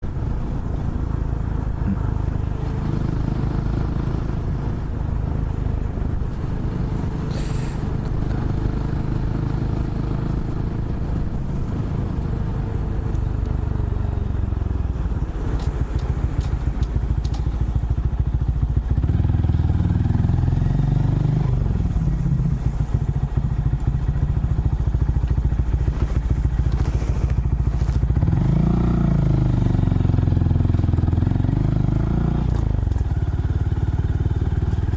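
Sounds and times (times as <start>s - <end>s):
small motorcycle engine revving: 6.8s - 10.8s, 24.5s - 34.9s.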